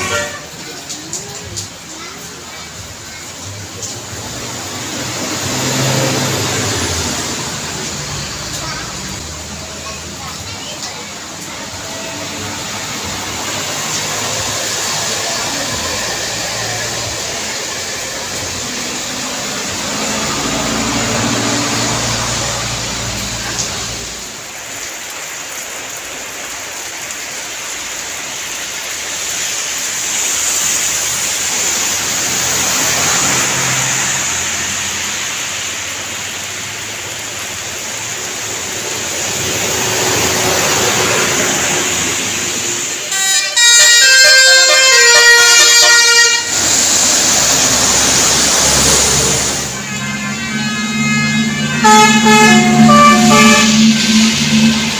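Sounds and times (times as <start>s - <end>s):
bus horn playing melody: 0.0s - 0.6s, 43.1s - 46.8s, 48.8s - 54.9s
traffic on wet road: 0.0s - 54.9s.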